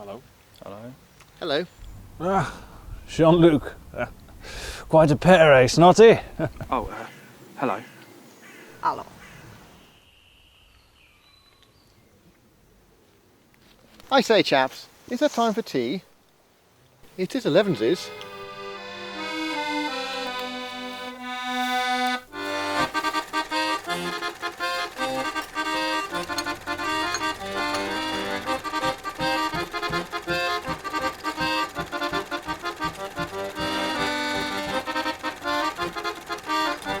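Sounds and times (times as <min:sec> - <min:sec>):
accordion music: 0:04.4 - 0:06.9, 0:17.1 - 0:37.0
bouncing beat: 0:22.3 - 0:37.0.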